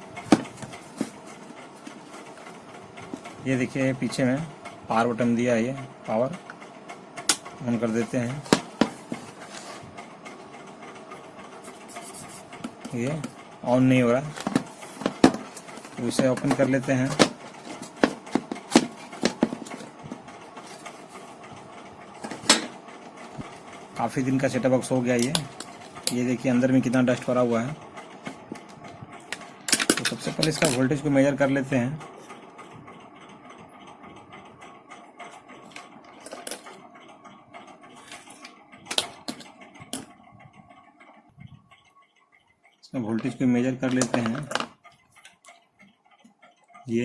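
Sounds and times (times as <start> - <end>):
multimeter probes clicking and rattling: 7.2 - 9.7, 14.0 - 21.3, 23.9 - 27.4, 28.2 - 31.1, 35.2 - 36.8, 38.0 - 40.1, 43.2 - 46.6.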